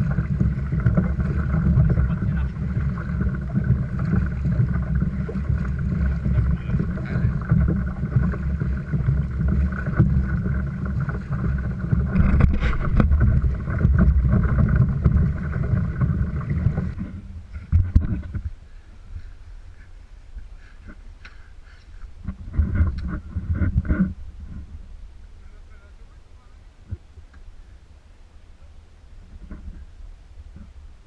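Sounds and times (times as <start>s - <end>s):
wind buffeting microphone: 0.0s - 19.8s, 22.1s - 25.4s.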